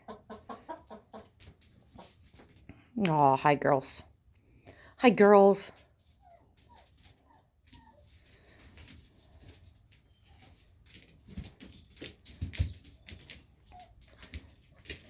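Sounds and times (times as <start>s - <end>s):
hens clucking softly: 0.0s - 2.1s.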